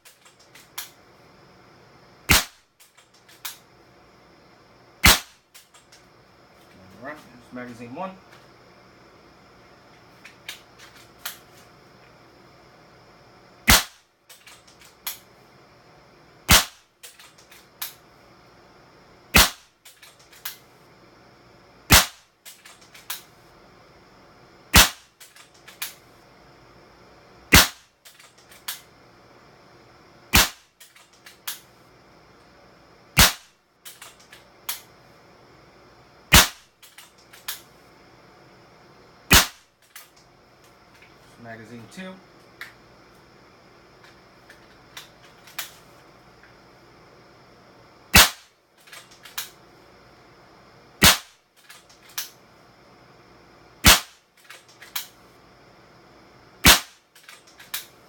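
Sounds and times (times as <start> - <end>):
air rifle shots: 2.3 - 2.6, 5.0 - 5.4, 13.7 - 14.0, 16.5 - 16.8, 19.3 - 19.7, 21.9 - 22.2, 24.7 - 25.1, 27.5 - 27.9, 30.3 - 30.7, 33.2 - 33.5, 36.3 - 36.7, 39.3 - 39.6, 48.1 - 48.5, 51.0 - 51.4, 53.8 - 54.2, 56.6 - 57.0.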